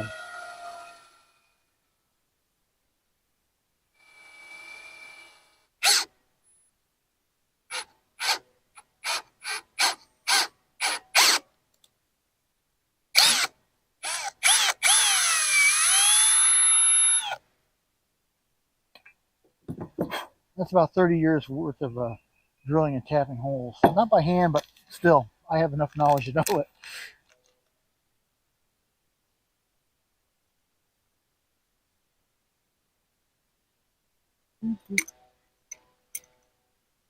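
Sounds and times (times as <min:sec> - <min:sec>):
power drill drilling: 0:00.0 - 0:01.5, 0:04.0 - 0:06.1, 0:07.7 - 0:08.4, 0:09.0 - 0:11.4, 0:13.2 - 0:17.4.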